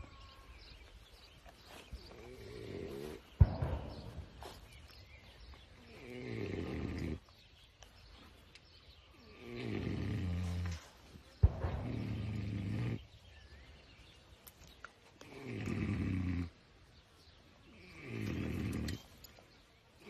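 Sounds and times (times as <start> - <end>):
pig snoring: 2.2 - 3.3, 5.8 - 7.2, 9.2 - 10.9, 11.7 - 13.0, 15.2 - 16.6, 17.8 - 19.0.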